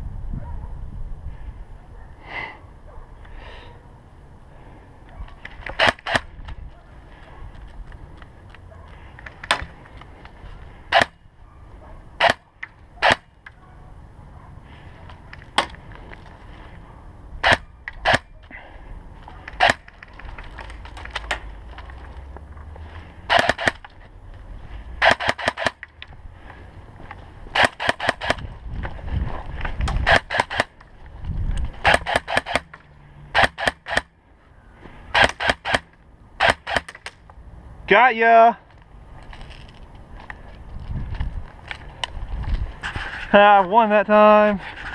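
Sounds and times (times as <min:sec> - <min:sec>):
airsoft guns firing: 0:05.5 - 0:06.4, 0:10.9 - 0:11.2, 0:12.2 - 0:13.4, 0:17.4 - 0:18.3, 0:19.4 - 0:21.5, 0:23.3 - 0:23.8, 0:25.0 - 0:25.8, 0:27.5 - 0:28.5, 0:30.0 - 0:30.8, 0:31.8 - 0:34.1, 0:35.1 - 0:37.1.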